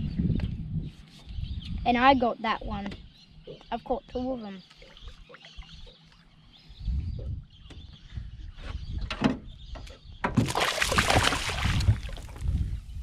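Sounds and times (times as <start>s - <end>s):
fish splashing: 10.4s - 12.4s.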